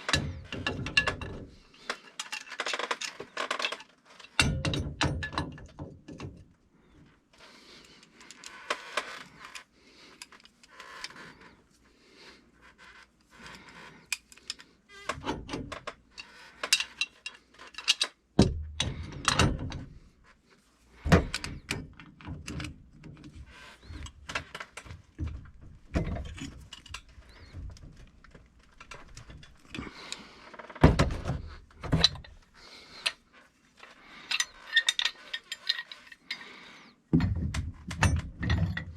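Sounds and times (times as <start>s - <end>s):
tools knocking and clinking on metal: 0.0s - 6.5s, 16.6s - 20.0s, 30.8s - 33.2s, 37.1s - 38.9s.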